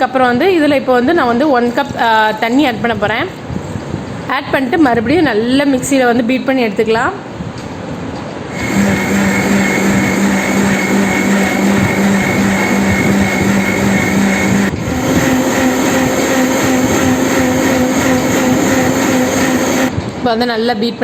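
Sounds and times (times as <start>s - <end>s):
mixer grinder motor whine: 8.5s - 19.9s.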